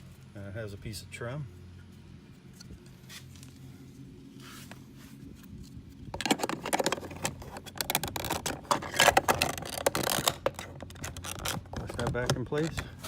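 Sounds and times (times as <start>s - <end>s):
plastic door trim clicks and scrapes: 6.2s - 13.0s.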